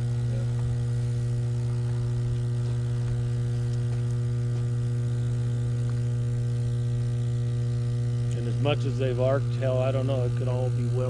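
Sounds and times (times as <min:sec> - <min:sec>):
electrical substation hum: 0:00.0 - 0:11.0.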